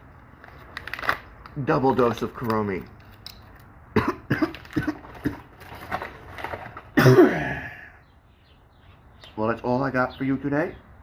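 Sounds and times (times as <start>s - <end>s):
person coughing: 4.0s - 5.5s, 7.0s - 7.9s.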